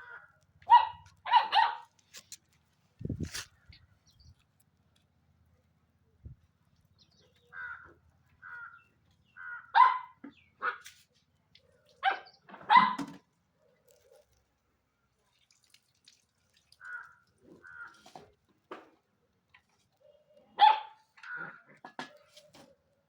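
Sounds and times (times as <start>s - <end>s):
puppy barking and yipping: 0.6s - 2.0s, 9.7s - 10.9s, 12.0s - 13.2s, 20.6s - 21.6s.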